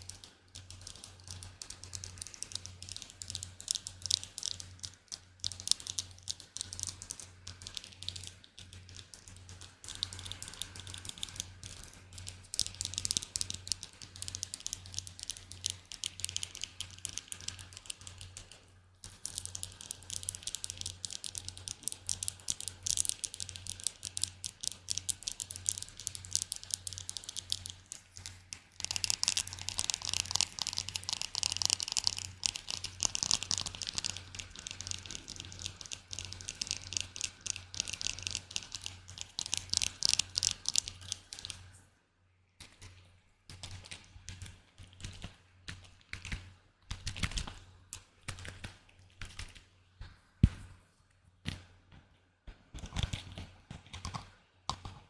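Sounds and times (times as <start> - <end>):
crisp rapid tapping: 0.0 - 41.6.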